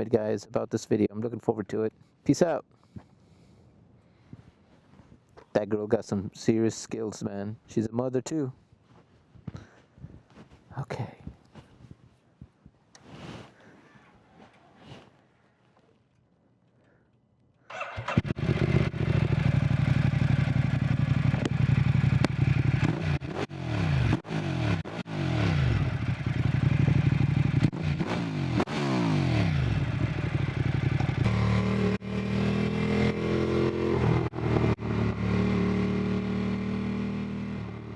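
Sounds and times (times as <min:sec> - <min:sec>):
motorcycle engine revving: 0:17.7 - 0:37.9.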